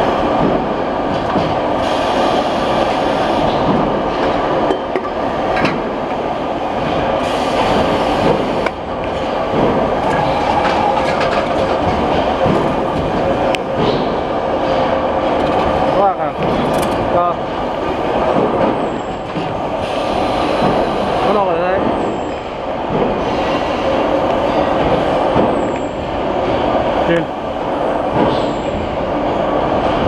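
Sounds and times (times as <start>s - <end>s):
machine rattle and hum: 6.8s - 19.8s.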